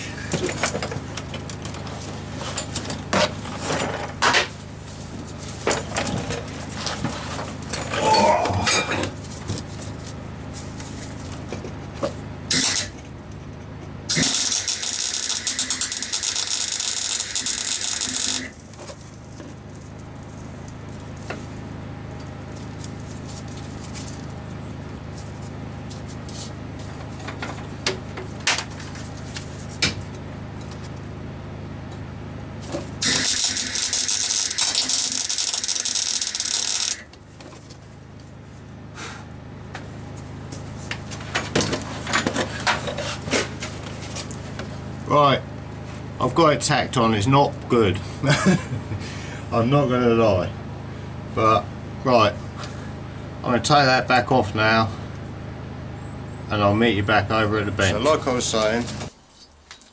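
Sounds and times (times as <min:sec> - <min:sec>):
generator humming: 0:00.0 - 0:59.9
welding bursts: 0:12.5 - 0:13.0, 0:14.1 - 0:18.6, 0:33.0 - 0:37.1.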